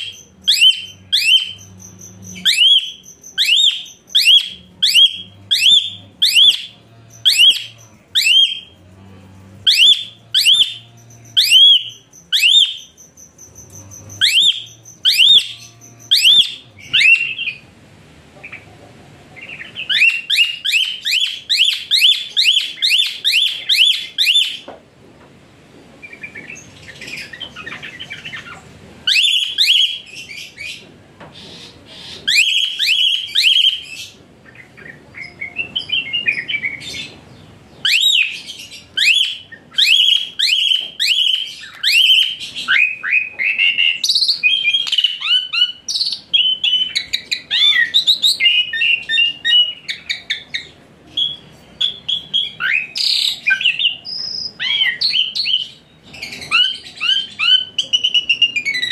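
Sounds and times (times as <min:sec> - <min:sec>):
songbird rising whistle calls: 0:00.0 - 0:08.7, 0:09.7 - 0:17.6, 0:32.3 - 0:33.9, 0:37.8 - 0:50.2.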